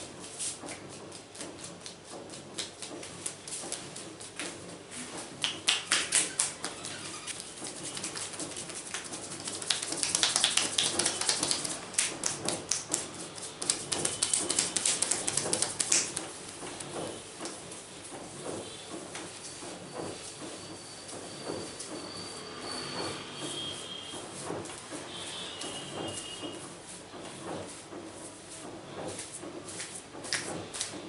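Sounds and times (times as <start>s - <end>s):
hands massaging oiled hair: 0.3s - 17.6s.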